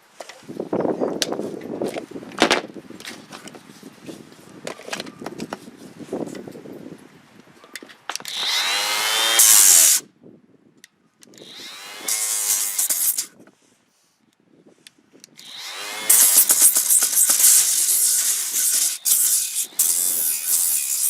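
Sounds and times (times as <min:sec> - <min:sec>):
orbital sander motor spinning: 0:11.4 - 0:13.3, 0:15.4 - 0:21.0.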